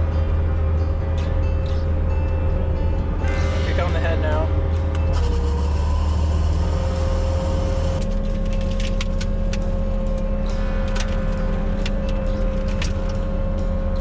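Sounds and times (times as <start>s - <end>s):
diesel engine running: 0.0s - 14.0s
hydraulic whine: 0.0s - 14.0s.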